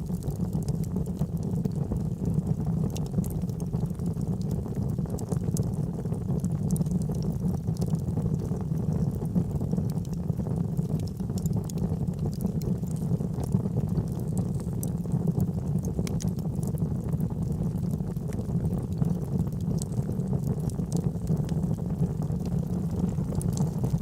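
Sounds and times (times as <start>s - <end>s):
fire crackling and popping: 0.0s - 24.0s
fire rushing: 20.5s - 24.0s.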